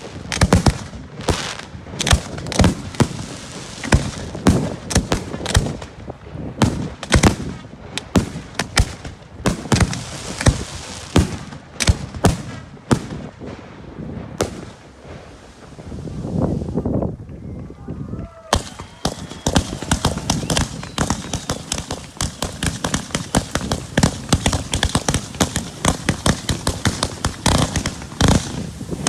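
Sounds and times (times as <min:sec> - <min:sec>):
fireworks shells bursting: 0:18.5 - 0:29.0.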